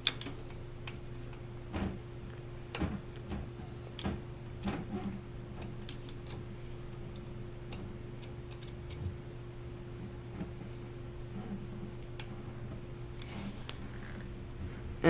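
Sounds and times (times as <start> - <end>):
metal bike parts clicking: 0.0 - 1.0
steady low hum: 0.0 - 15.0.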